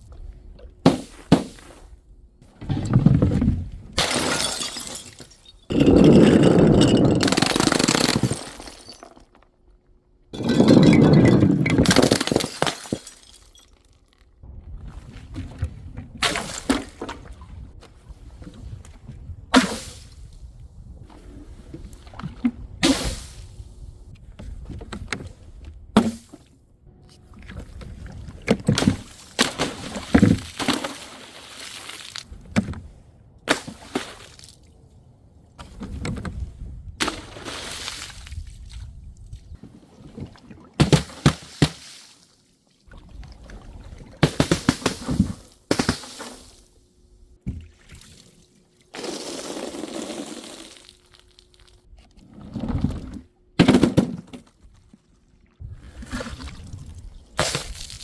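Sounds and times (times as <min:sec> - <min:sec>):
glass shattering: 0:04.0 - 0:09.2
liquid splashing and sloshing: 0:47.4 - 0:53.2, 0:54.5 - 0:58.0.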